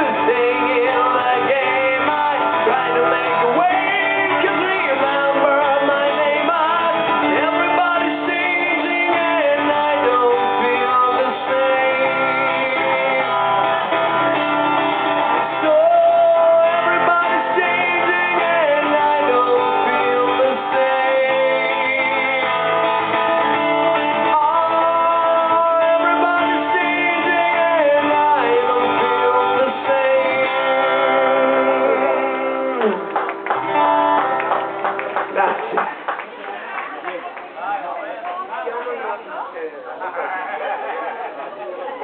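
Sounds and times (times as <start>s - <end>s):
person singing: 0.0s - 33.2s
guitar: 0.0s - 42.0s.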